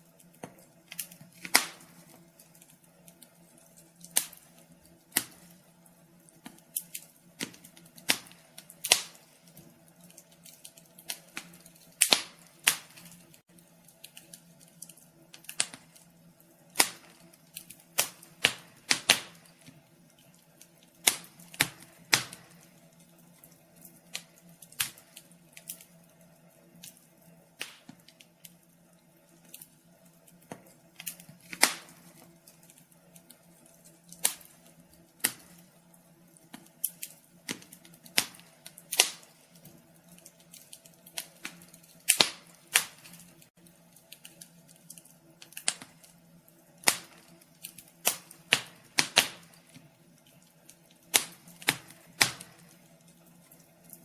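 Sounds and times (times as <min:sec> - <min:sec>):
wood fire crackling: 0:00.0 - 0:54.0.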